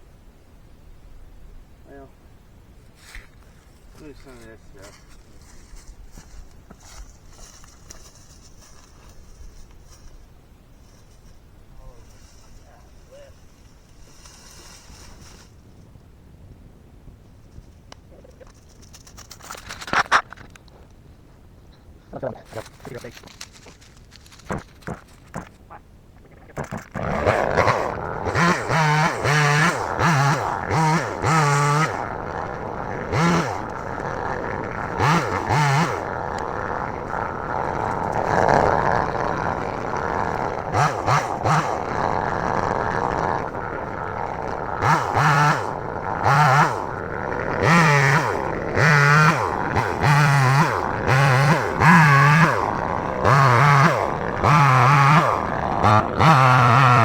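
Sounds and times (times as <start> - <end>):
chainsaw revving while cutting: 26.6 - 57.0.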